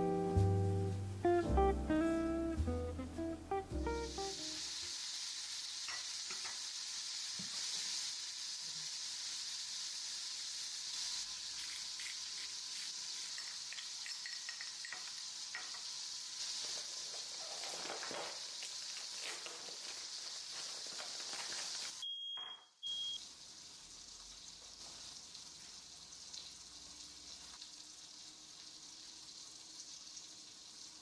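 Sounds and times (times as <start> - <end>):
food sizzling in hot oil: 3.8 - 22.0, 23.0 - 31.0
oil crackling and popping: 4.2 - 22.0, 23.2 - 30.8.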